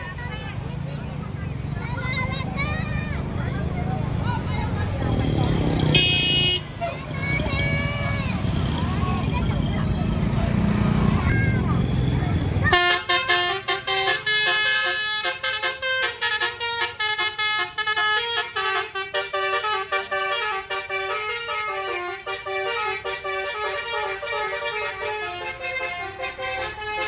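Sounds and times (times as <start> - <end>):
musical air horn melody: 5.9 - 6.6, 12.7 - 27.0.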